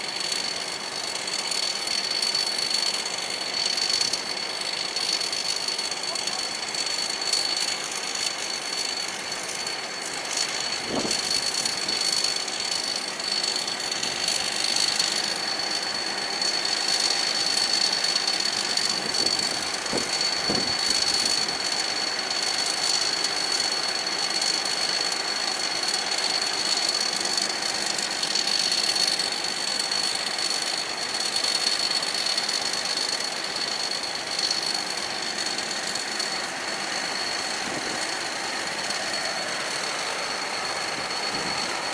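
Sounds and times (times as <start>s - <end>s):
combine harvester engine: 0.0s - 41.9s
high-pitched whine: 36.2s - 41.9s.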